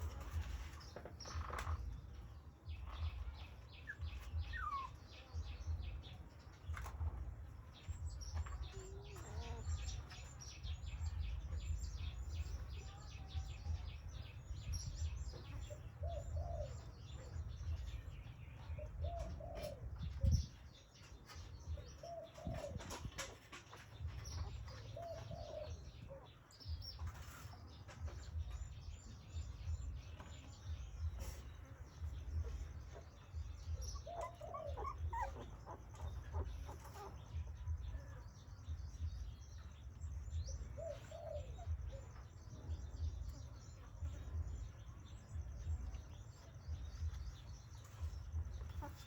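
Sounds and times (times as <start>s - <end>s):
puppies whimpering: 3.8s - 5.5s, 32.4s - 37.8s.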